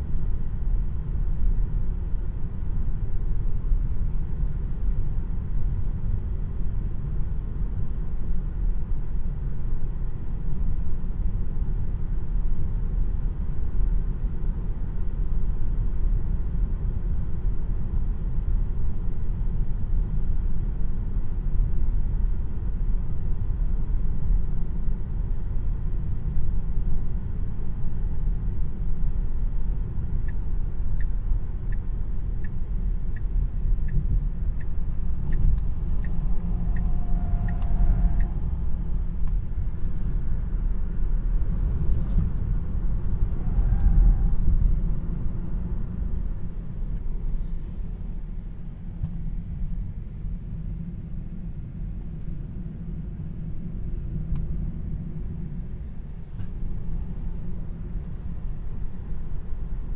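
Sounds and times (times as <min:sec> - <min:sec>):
road and tyre rumble: 0:00.0 - 0:59.9
turn signal ticking: 0:31.0 - 0:40.0.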